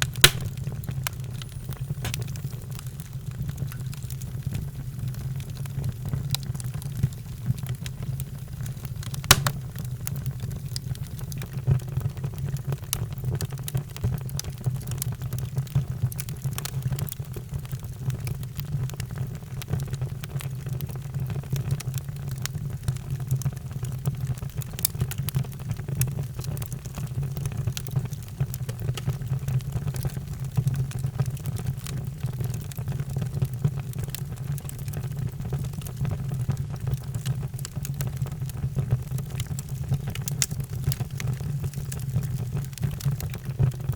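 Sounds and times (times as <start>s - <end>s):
sharp pops and snaps: 0.0s - 2.3s, 8.9s - 11.5s, 28.4s - 29.3s
wood fire crackling: 0.0s - 43.9s.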